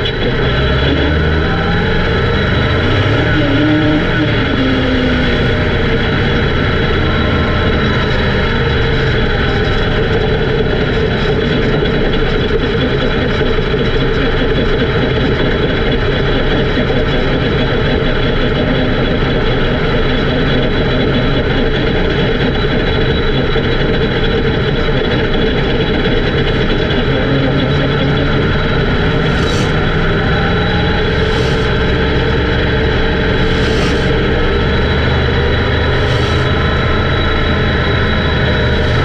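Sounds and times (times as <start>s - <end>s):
race car engine running: 0.0s - 39.0s.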